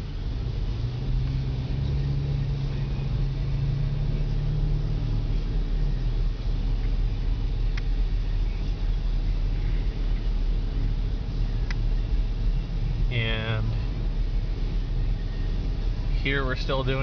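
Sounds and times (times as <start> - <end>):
car road and engine drone: 0.0 - 17.0
low steady hum: 0.0 - 17.0
faint click: 11.6 - 11.8.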